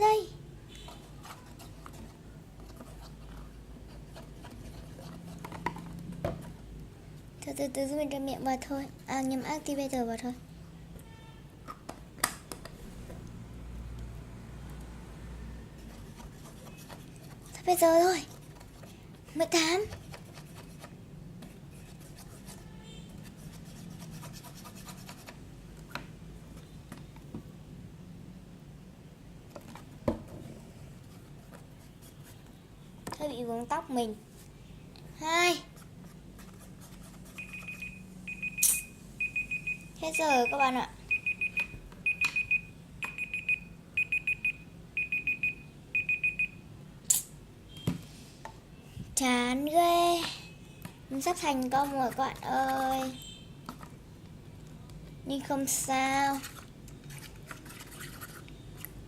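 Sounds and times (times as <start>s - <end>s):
timer alarm high beeps: 37.4s - 46.6s
sharp click: 38.6s - 38.9s, 47.1s - 47.4s.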